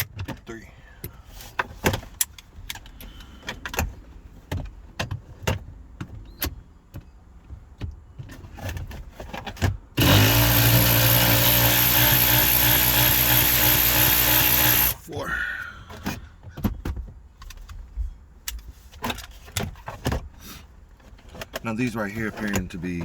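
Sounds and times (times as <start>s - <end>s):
power drill running: 10.0s - 15.1s.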